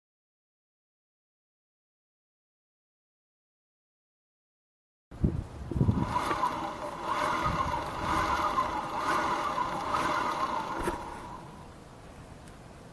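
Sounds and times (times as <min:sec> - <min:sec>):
scooter drivetrain whirring: 0:05.6 - 0:11.8
mechanical click: 0:06.0 - 0:11.6.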